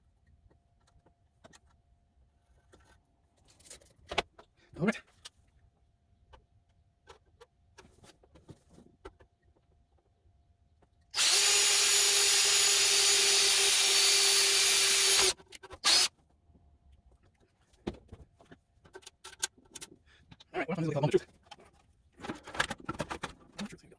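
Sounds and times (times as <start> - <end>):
power drill drilling into metal: 11.2 - 16.1.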